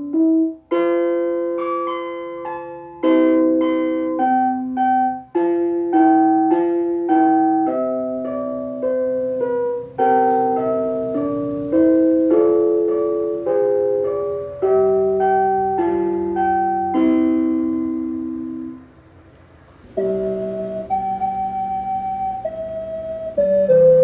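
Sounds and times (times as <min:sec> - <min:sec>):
electric piano chime melody: 0:00.0 - 0:18.8, 0:19.9 - 0:24.0.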